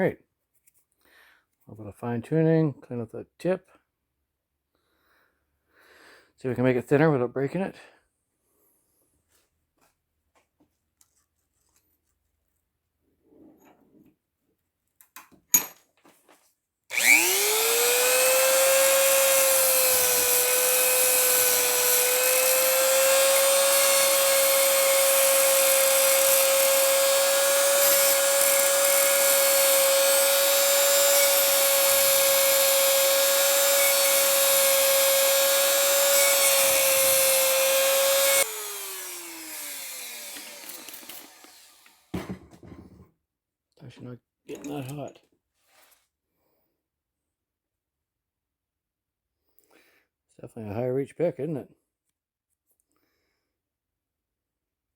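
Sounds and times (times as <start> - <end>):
rotary tool grinding whine: 16.9 - 42.1.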